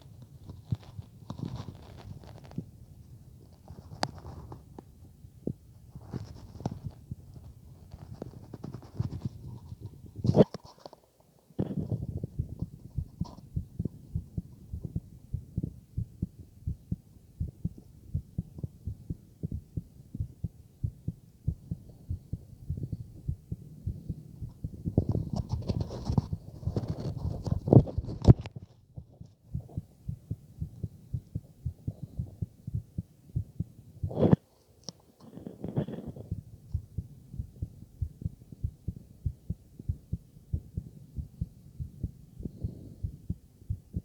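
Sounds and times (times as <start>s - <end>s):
heartbeat through stethoscope: 11.6s - 34.4s, 35.6s - 44.0s.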